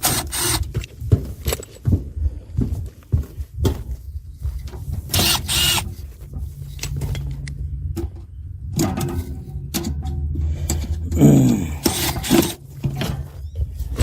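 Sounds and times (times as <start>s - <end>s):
tools clicking and knocking: 0.0s - 1.8s, 6.8s - 11.2s, 11.8s - 13.3s
steady low hum: 0.2s - 14.0s.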